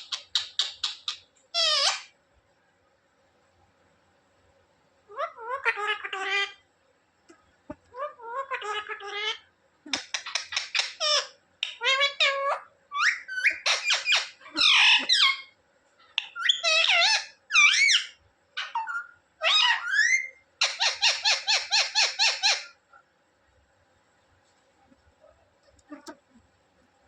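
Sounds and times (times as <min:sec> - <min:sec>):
parrot squawking and chattering: 0:00.0 - 0:02.1, 0:05.1 - 0:06.6, 0:07.7 - 0:22.8, 0:25.8 - 0:26.4.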